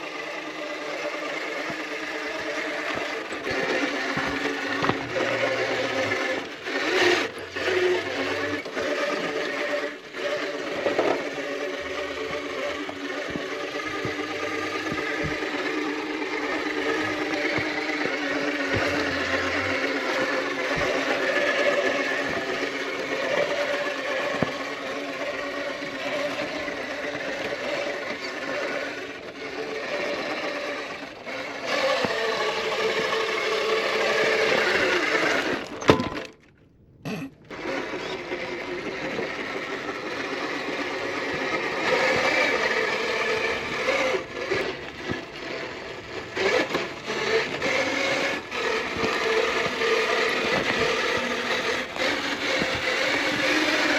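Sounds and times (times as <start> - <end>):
rc car motor whining: 0.0 - 36.3, 37.4 - 53.9
crunching: 38.7 - 53.9.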